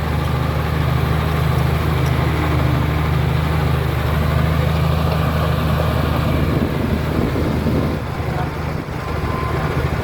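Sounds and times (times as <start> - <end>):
bulldozer diesel engine rumbling: 0.0 - 10.0.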